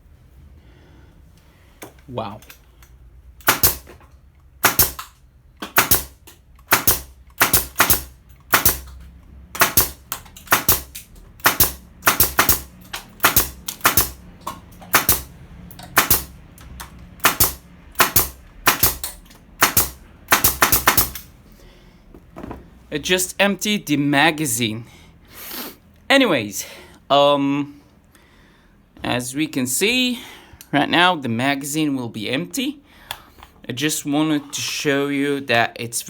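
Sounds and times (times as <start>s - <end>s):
nail gun firing: 3.4s - 4.0s, 4.6s - 9.0s, 9.6s - 14.2s, 14.9s - 15.3s, 16.0s - 16.4s, 17.2s - 21.3s.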